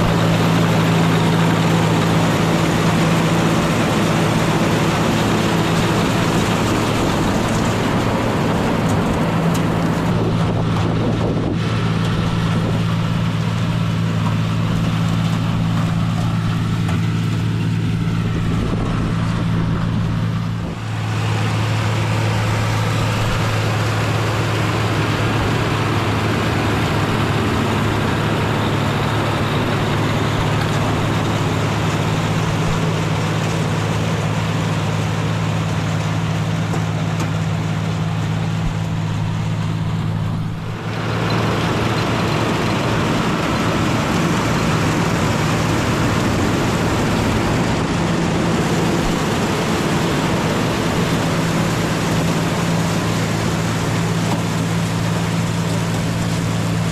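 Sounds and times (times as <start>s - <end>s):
tractor engine running under load: 0.0s - 56.9s.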